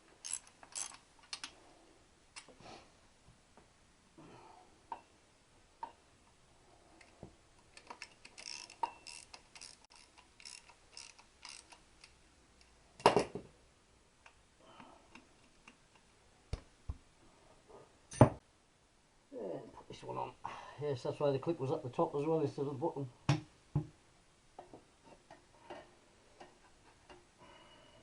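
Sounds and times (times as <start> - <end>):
ratchet ticking: 8.3 - 11.8.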